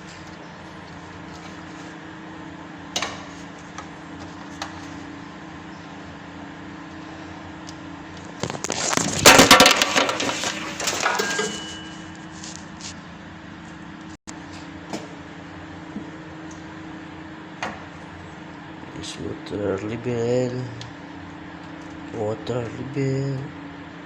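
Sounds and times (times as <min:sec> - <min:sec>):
steady low hum: 0:00.0 - 0:24.0
parts crackling and clattering: 0:08.2 - 0:13.0.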